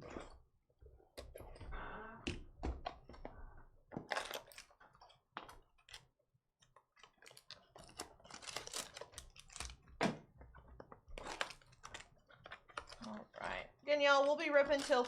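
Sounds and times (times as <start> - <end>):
wrapper crinkling: 7.0 - 9.9, 11.1 - 15.0.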